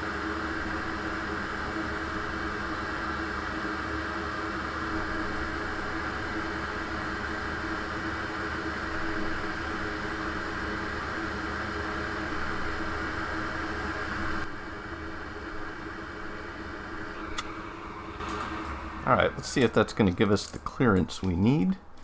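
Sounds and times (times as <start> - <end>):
low hum: 14.3 - 22.0.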